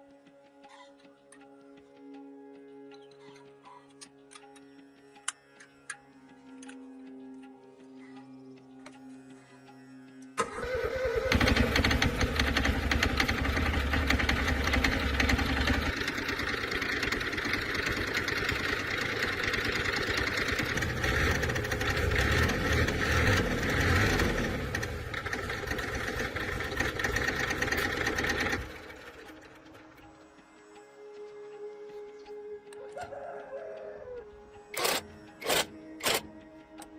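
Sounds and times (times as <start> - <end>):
tractor engine running: 10.4 - 30.3.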